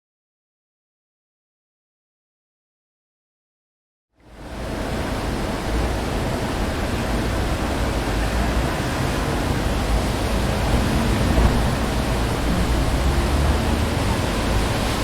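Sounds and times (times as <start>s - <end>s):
low rumble of traffic: 4.2s - 15.0s
wind rustling tree leaves: 4.2s - 15.0s.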